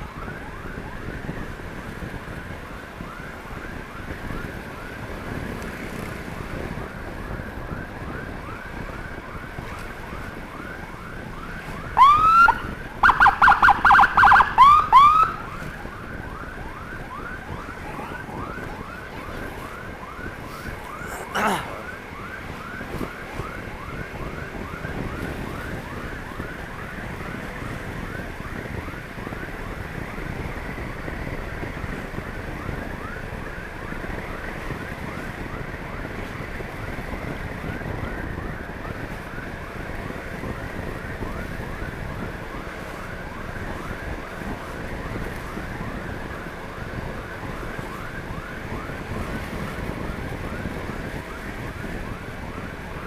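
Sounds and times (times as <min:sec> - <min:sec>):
wind on microphone: 0:00.0 - 0:53.0
siren yelping: 0:07.8 - 0:29.8.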